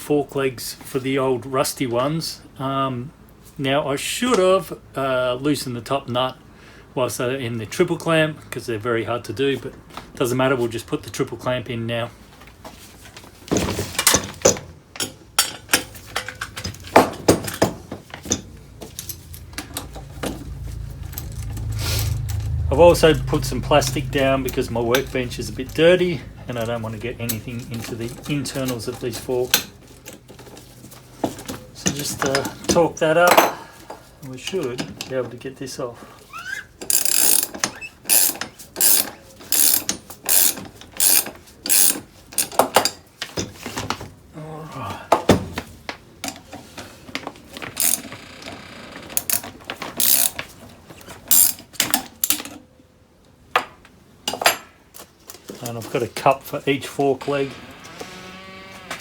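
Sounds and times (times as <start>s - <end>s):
ratchet wrench rasping: 36.4s - 42.6s, 47.8s - 48.1s, 49.2s - 50.4s, 51.3s - 51.6s.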